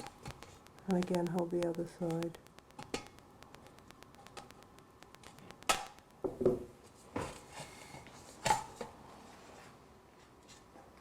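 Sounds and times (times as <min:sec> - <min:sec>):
sharp clicks of wire connectors: 0:00.0 - 0:06.2.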